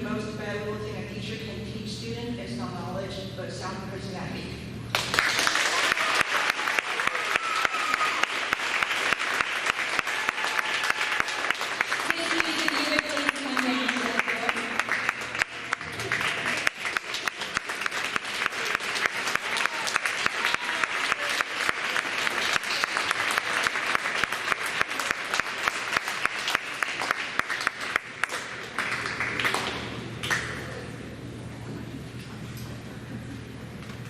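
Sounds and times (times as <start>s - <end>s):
audience clapping: 4.9s - 30.8s.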